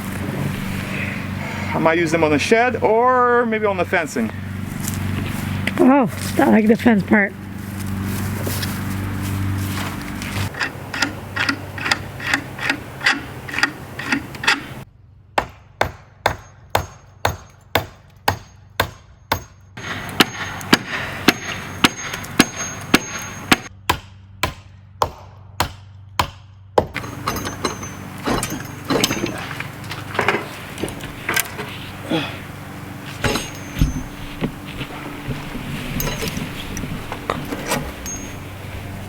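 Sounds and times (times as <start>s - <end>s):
hammer blows ringing metallic: 19.4s - 23.7s, 27.0s - 31.0s, 31.6s - 39.0s.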